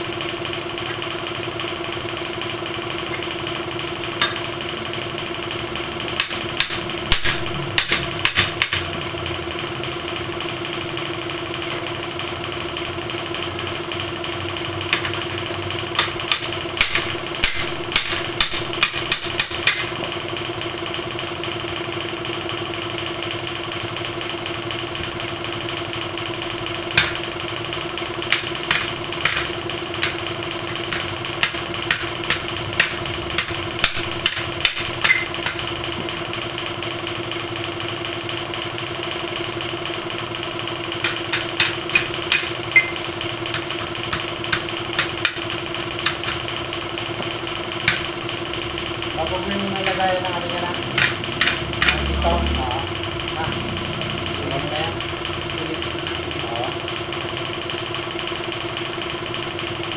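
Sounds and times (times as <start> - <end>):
machine humming: 0.0 - 59.9
sharp clicks and taps: 4.1 - 4.5, 6.2 - 9.0, 14.9 - 20.1, 28.3 - 35.7, 41.0 - 46.6, 47.2 - 48.2, 49.2 - 52.2.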